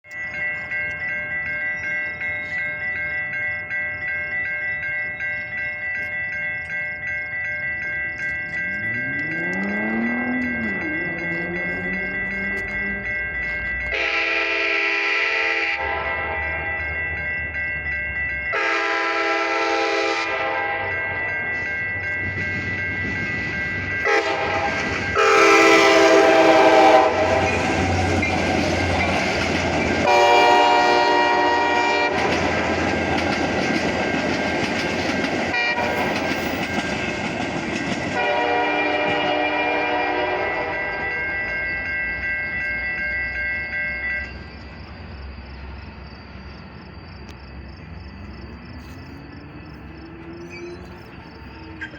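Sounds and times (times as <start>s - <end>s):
train wheels clattering on rails: 0.0s - 14.7s, 15.8s - 51.9s
crossing warning bells: 0.0s - 51.9s
train horn blasts: 13.8s - 16.7s, 18.5s - 21.1s, 24.0s - 28.2s, 30.0s - 32.5s, 35.5s - 36.3s, 38.1s - 41.7s.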